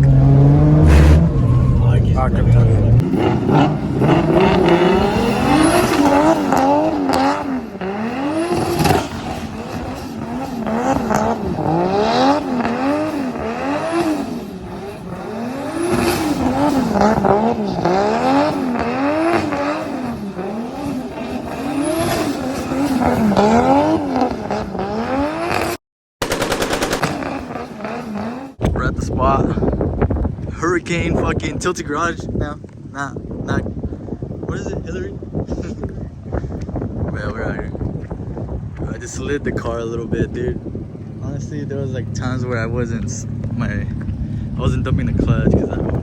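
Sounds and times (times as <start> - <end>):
electronic siren wailing: 0.5 - 3.0.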